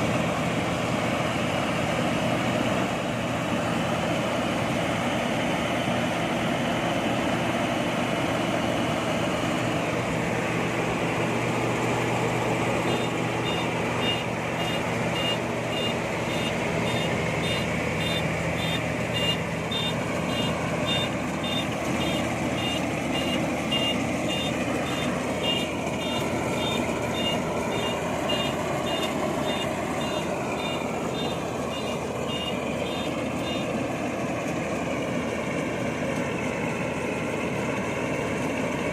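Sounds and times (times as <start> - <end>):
combine harvester engine running: 0.0 - 38.9
reversing alarm beeping: 12.8 - 33.8.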